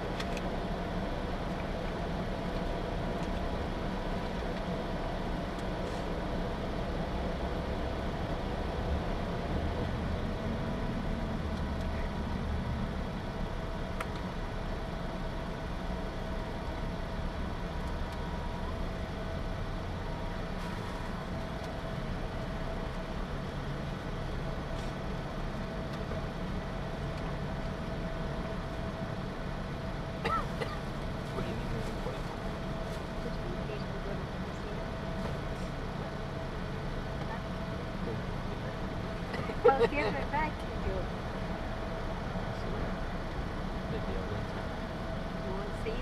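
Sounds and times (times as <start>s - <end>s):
faint steady whine: 0.0s - 46.0s
vehicle engine and road noise: 0.0s - 46.0s.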